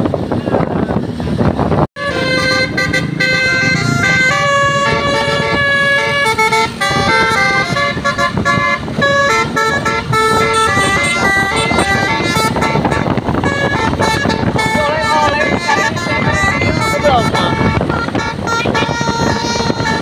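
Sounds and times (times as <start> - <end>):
multi-tone bus horn melody: 2.0 - 20.0.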